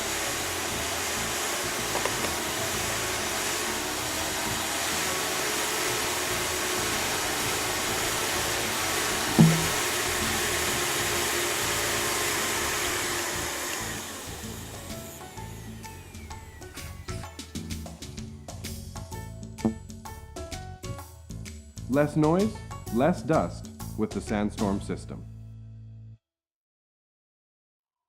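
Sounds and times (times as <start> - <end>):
sharp thump: 9.4 - 9.8.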